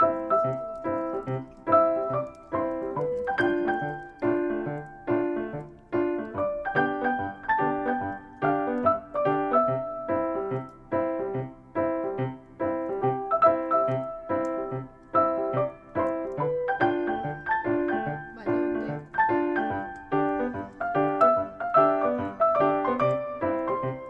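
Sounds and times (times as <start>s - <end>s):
light rhythmic piano tune: 0.0s - 24.0s.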